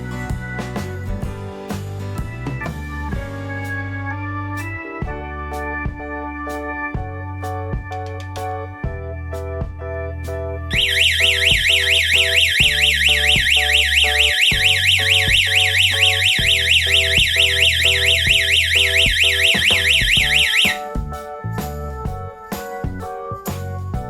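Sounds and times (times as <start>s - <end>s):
keyboard music with bass: 0.0s - 24.0s
warbling electronic alarm siren: 10.7s - 21.0s.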